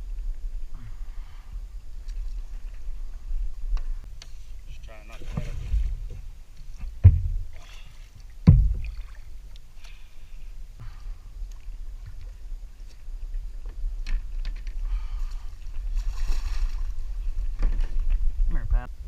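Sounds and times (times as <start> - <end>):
steady low rumble: 0.0 - 19.0
thump on kayak: 6.8 - 7.5, 8.4 - 9.0.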